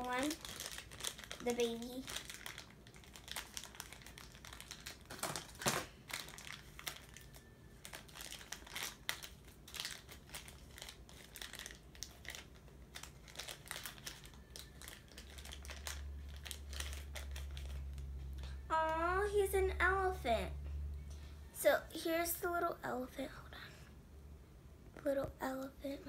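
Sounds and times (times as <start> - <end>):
plastic wrapper crinkling: 0.0 - 18.6
steady low hum: 14.2 - 26.0.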